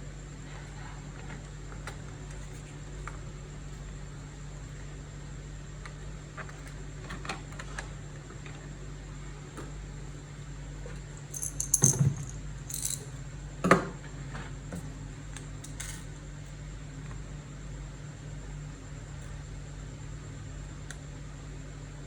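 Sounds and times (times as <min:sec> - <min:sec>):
steady low hum: 0:11.2 - 0:13.2
small hard objects clicking: 0:11.4 - 0:13.0.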